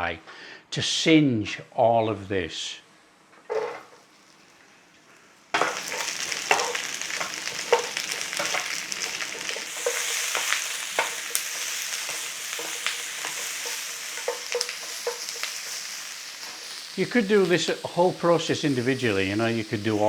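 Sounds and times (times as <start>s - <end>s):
vegetables sizzling in a pan: 3.5s - 20.0s
utensil scraping against pan: 5.6s - 16.9s.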